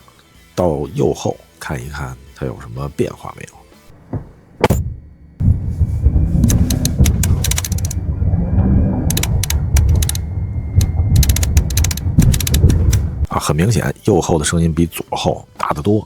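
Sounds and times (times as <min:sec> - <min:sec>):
low road rumble: 0:03.7 - 0:13.3
interior clicking and rattling: 0:03.9 - 0:13.3.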